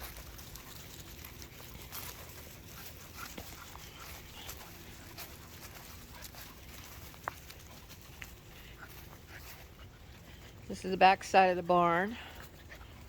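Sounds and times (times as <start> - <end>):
faint ticks and rustles: 0.0 - 13.0.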